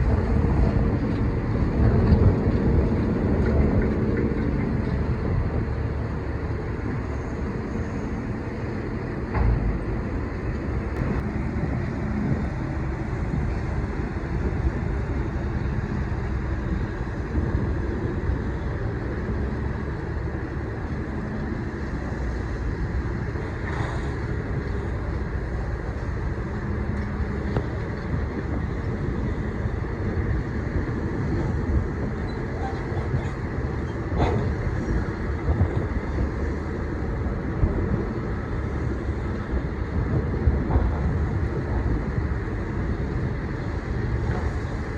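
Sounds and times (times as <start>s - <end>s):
boat engine rumble: 0.0s - 44.9s.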